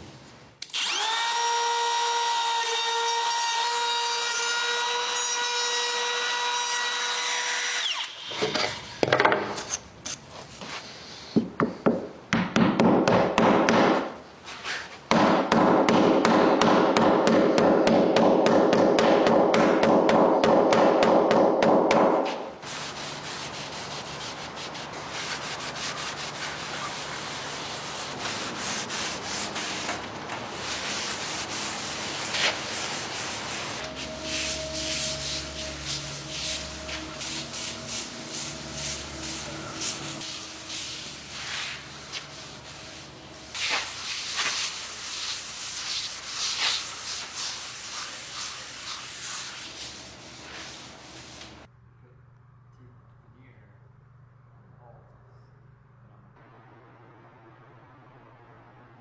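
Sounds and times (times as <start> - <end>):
wood being sanded: 22.3 - 51.7.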